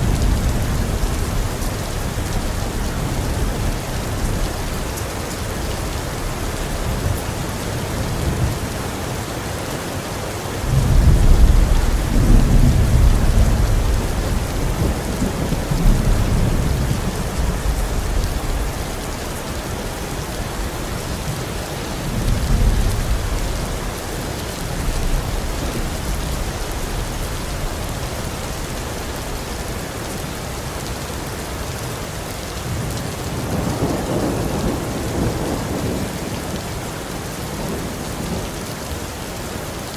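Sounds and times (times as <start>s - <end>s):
heavy rain: 0.0s - 39.9s
thunder rumbling: 10.6s - 29.5s, 32.6s - 38.6s.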